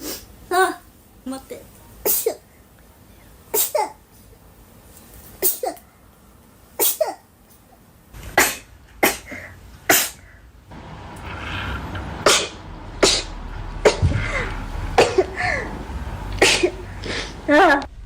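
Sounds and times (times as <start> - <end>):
woman sneezing: 8.4 - 10.2, 16.4 - 17.7.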